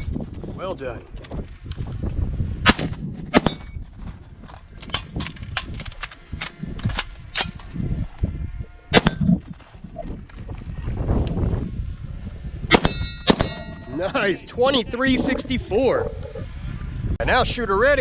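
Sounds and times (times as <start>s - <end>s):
rifle shots: 2.6s - 3.8s, 8.9s - 9.4s, 12.7s - 13.9s
steel targets ringing: 8.9s - 9.4s, 12.7s - 14.2s.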